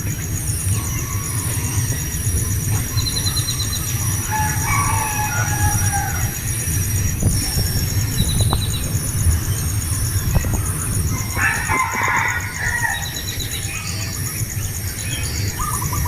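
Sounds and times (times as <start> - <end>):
continuous low rumble: 0.0 - 16.0
bird call: 10.1 - 16.0.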